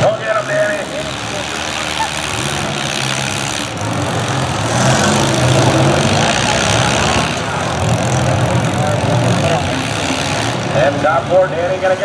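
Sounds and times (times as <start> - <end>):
car engines running and revving: 0.0 - 12.0.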